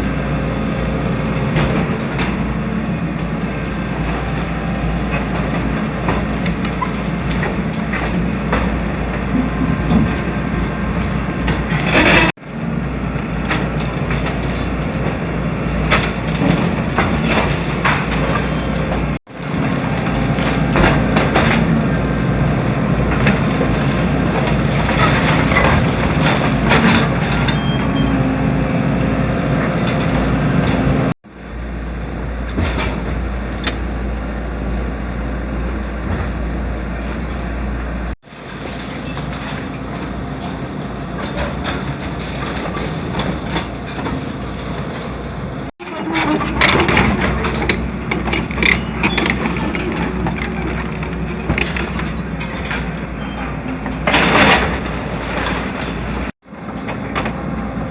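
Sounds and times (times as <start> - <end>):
excavator engine under load: 0.0 - 57.9.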